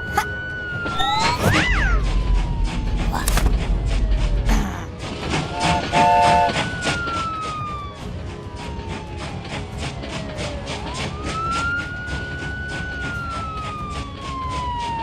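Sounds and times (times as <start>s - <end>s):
police siren wailing: 0.0s - 15.0s
deep rumble: 0.8s - 10.8s
horn short blasts: 5.5s - 6.6s.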